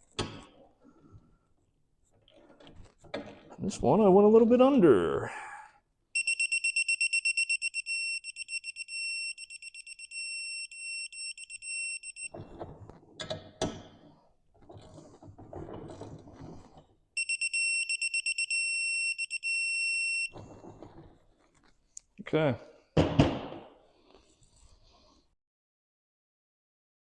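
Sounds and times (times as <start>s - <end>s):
high-pitched wrench beeping: 6.2s - 12.3s, 17.2s - 20.3s.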